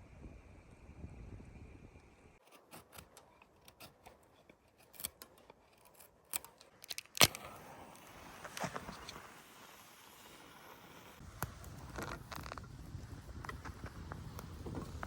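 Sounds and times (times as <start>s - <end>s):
low wind-like noise: 0.0s - 2.4s, 7.2s - 15.0s.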